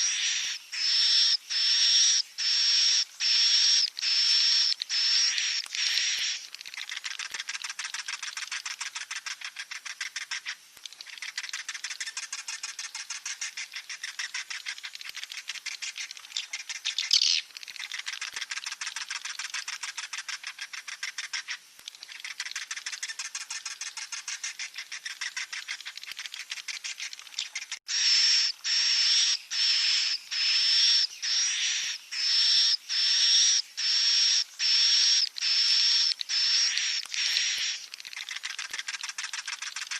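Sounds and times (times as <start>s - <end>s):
bird chicks calling: 8.6s - 38.5s.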